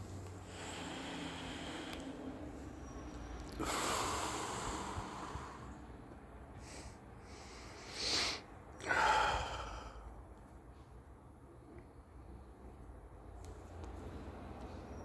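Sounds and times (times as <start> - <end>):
person breathing: 0.4 - 2.8, 3.5 - 6.0, 6.6 - 10.2
person sniffing: 6.7 - 9.7.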